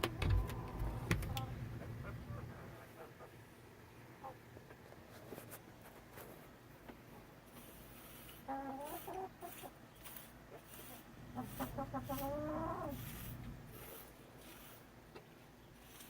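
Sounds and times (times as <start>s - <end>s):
chicken calling: 11.3s - 13.2s.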